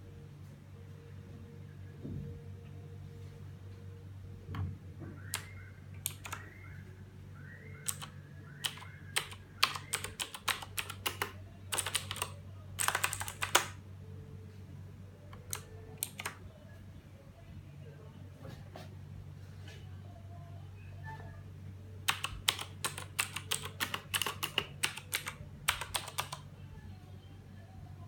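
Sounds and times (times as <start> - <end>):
mechanical keyboard typing: 5.2 - 6.6, 7.8 - 13.8, 15.3 - 16.4, 22.0 - 26.5.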